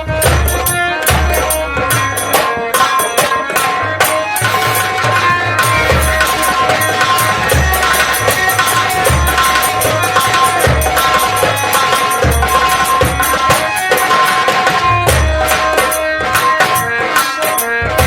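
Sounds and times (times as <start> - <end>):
held melody line: 0.0 - 18.0
fast drum roll: 4.3 - 16.0
deep drum hits: 5.0 - 13.6.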